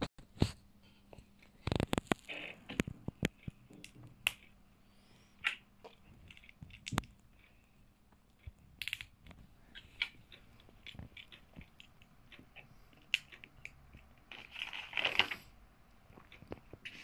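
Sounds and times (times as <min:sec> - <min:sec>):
rattle of plastic pieces: 0:14.3 - 0:15.5.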